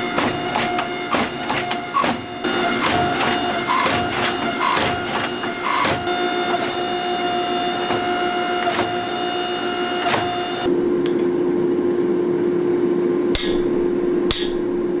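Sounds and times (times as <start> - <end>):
machine hum: 0.0 - 15.0
sharp metal strikes: 13.4 - 15.0.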